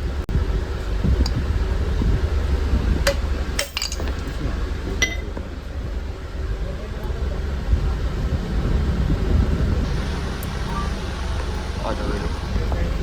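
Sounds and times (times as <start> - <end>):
low rumble: 0.0 - 13.0
metal clinking: 3.1 - 4.4.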